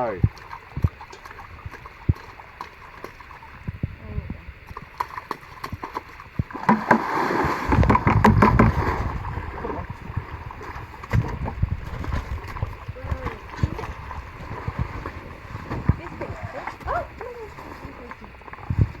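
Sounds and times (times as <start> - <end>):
water splashing and sloshing: 0.0 - 19.0
faint voices: 12.8 - 19.0.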